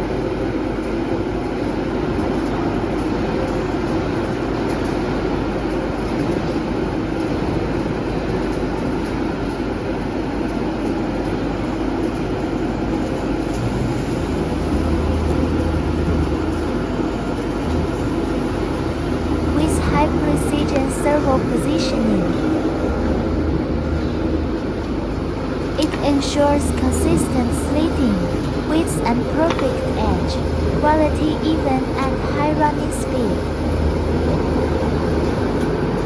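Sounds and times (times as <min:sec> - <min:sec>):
machine running: 0:12.5 - 0:36.0
deep hum: 0:13.5 - 0:36.0.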